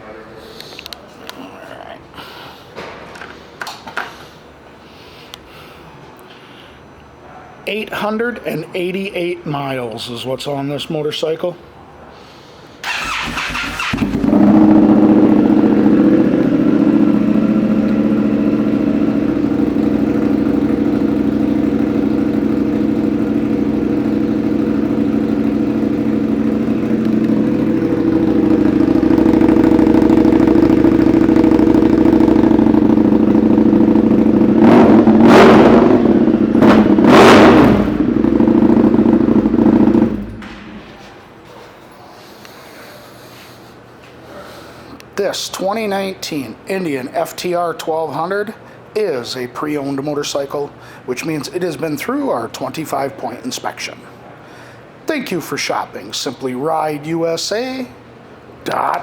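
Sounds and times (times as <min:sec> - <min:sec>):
motorcycle engine idling and revving: 0:12.9 - 0:41.0.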